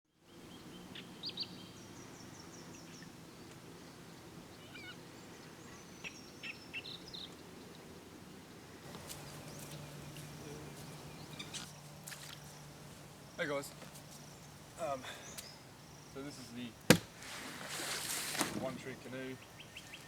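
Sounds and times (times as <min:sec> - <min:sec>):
birds chirping: 0:00.2 - 0:20.0
steady low hum: 0:08.0 - 0:17.3.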